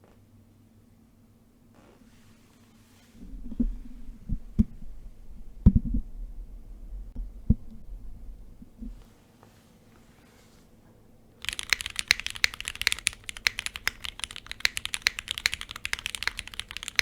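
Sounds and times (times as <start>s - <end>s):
low rumble: 3.2s - 9.0s
mechanical keyboard keystrokes: 11.4s - 17.0s.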